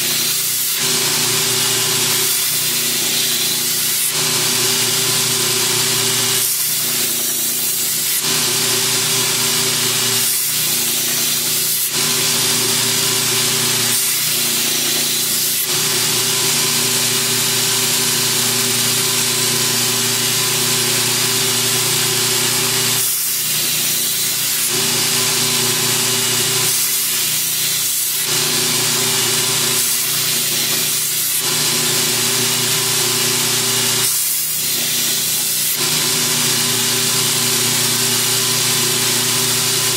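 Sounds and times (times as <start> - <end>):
belt grinder motor hum: 0.0 - 39.9
blade grinding hiss: 0.0 - 39.9.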